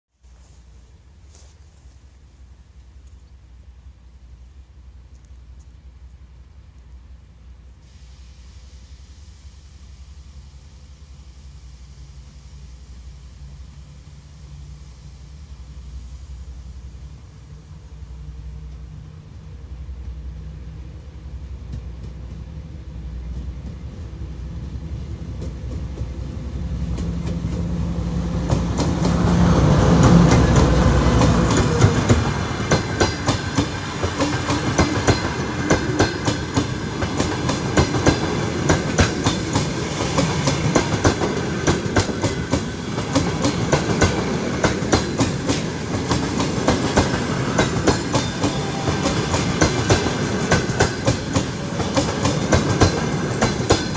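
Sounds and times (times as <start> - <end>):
diesel locomotive engine rumble: 0.3 - 53.9
wheels clicking over rail joints: 28.4 - 53.9.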